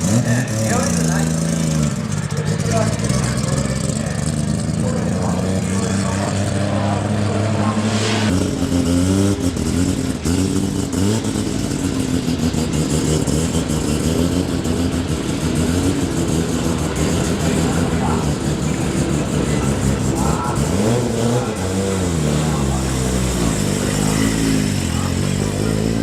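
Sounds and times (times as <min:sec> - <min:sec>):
car engine revving: 0:00.0 - 0:26.0.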